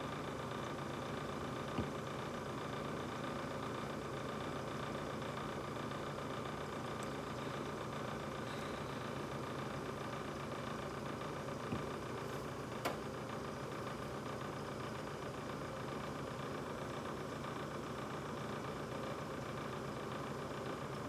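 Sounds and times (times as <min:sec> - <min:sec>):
refrigerator humming: 0:00.0 - 0:21.0
refrigerator clicks: 0:12.2 - 0:13.2.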